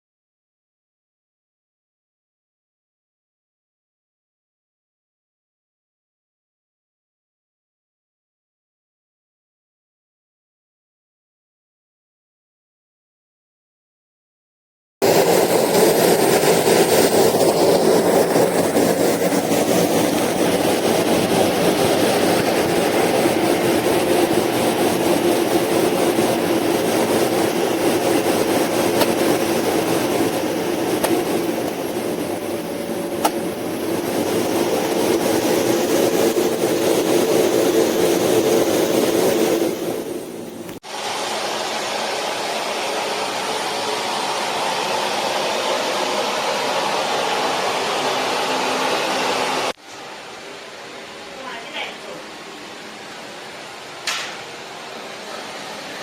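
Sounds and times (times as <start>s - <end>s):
vacuum cleaner motor whirring: 15.0s - 56.0s.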